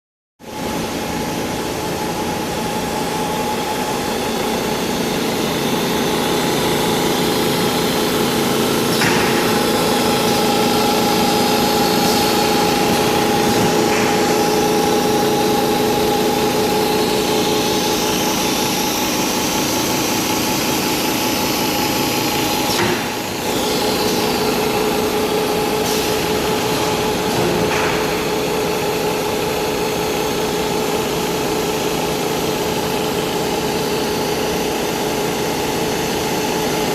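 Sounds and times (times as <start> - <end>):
sewing machine humming: 2.6 - 27.4.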